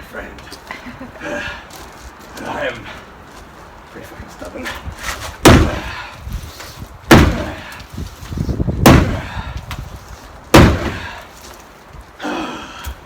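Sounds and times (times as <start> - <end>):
sledgehammer strikes on shed: 5.4 - 6.1, 7.1 - 7.8, 8.8 - 9.8, 10.5 - 11.3.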